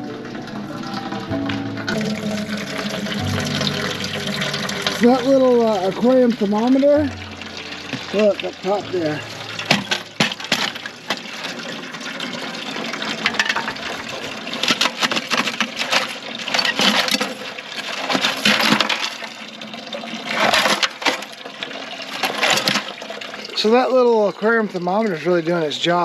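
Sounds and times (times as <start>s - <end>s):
water splashing: 0.0s - 19.5s
ice clinking and cracking: 1.9s - 24.5s.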